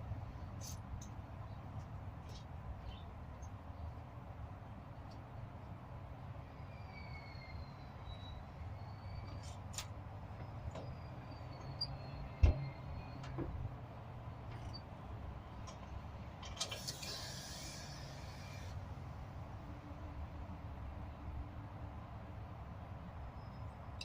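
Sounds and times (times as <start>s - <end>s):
brief hiss: 16.6s - 18.8s.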